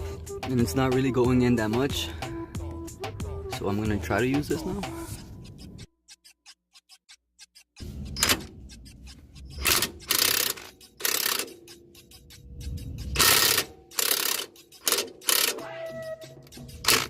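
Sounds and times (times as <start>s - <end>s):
ball joint press rasping: 5.5s - 17.0s.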